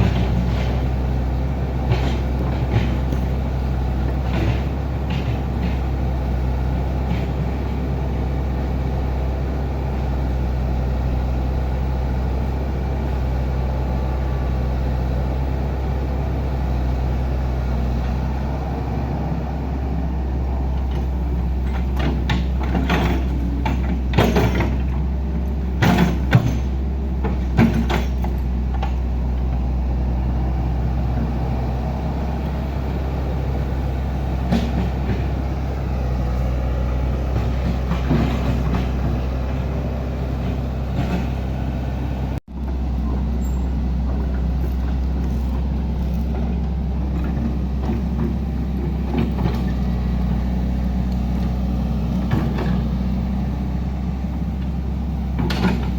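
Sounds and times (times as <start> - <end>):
heavy diesel engine running: 0.0 - 55.9
metallic knocks and clanks: 20.8 - 29.6, 55.4 - 55.9.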